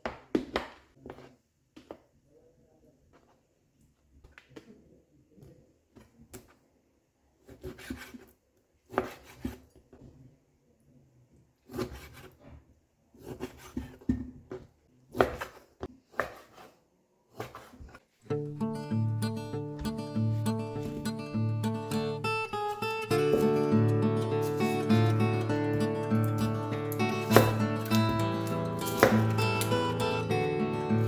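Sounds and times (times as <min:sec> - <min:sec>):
utensils scraping on wooden board: 0:22.6 - 0:30.6.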